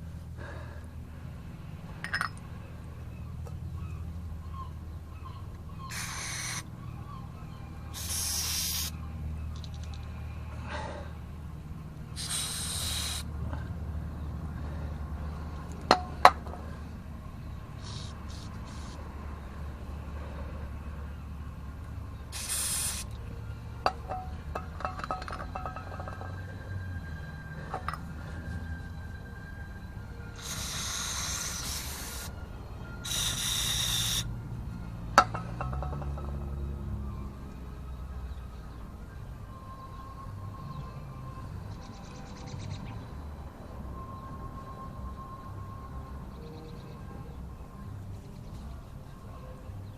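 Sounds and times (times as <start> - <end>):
spray hiss: 8.0 - 8.9, 12.2 - 13.2, 22.4 - 23.1, 30.4 - 32.3, 33.1 - 34.2
low hum: 9.0 - 38.8.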